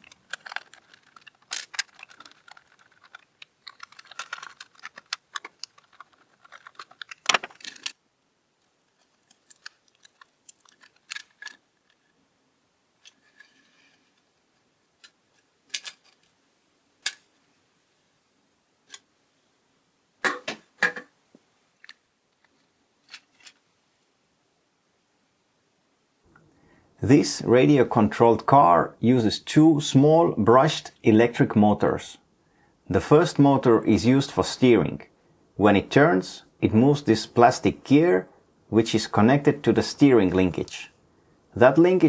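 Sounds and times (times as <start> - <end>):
plastic parts clicking and rattling: 0.0 - 8.0, 8.6 - 12.2, 13.0 - 14.3, 15.0 - 16.4, 17.0 - 17.3, 21.8 - 23.6.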